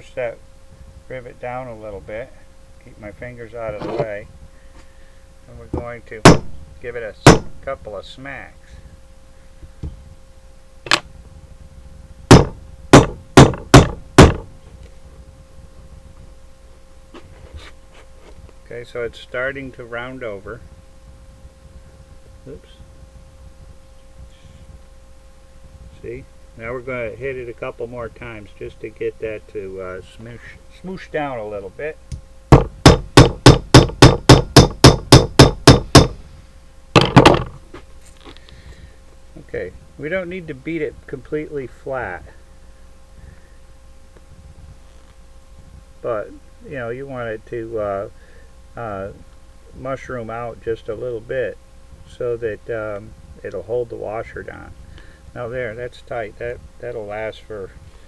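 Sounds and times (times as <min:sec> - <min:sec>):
small hammer striking rivet: 0:06.3 - 0:06.5, 0:07.3 - 0:07.5, 0:12.3 - 0:14.4, 0:32.5 - 0:36.2, 0:37.0 - 0:37.6.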